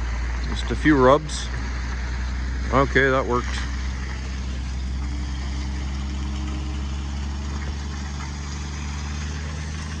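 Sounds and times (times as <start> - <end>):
diesel truck engine idling: 0.0 - 10.0.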